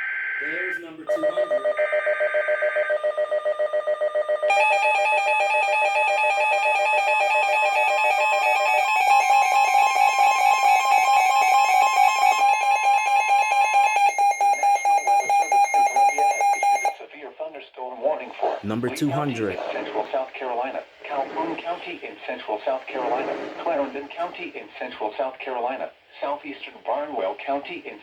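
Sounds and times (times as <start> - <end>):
rapidly pulsing alarm beep: 1.2 - 17.0.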